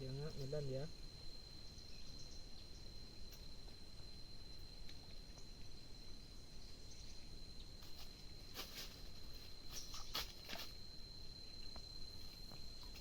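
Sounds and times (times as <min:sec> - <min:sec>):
outdoor background noise: 0:00.0 - 0:13.0.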